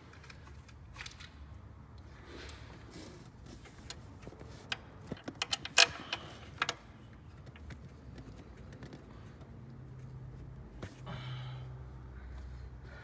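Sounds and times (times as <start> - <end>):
tools and fasteners clinking: 5.1 - 6.9.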